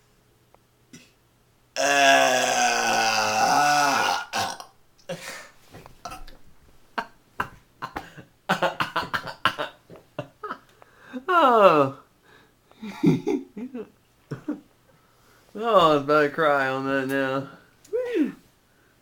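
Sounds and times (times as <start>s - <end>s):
man burping: 1.8s - 5.3s, 6.0s - 6.4s, 7.0s - 9.8s.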